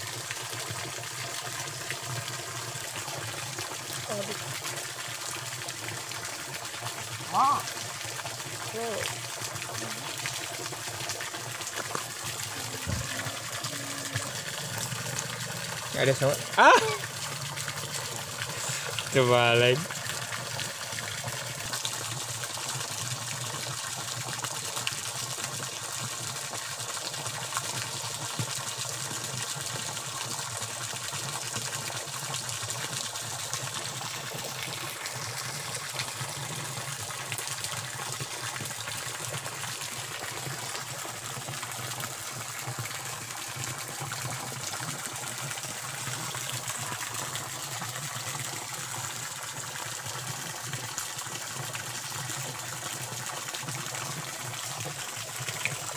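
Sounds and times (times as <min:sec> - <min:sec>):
stream rushing over waterfall: 0:06.5 - 0:21.9.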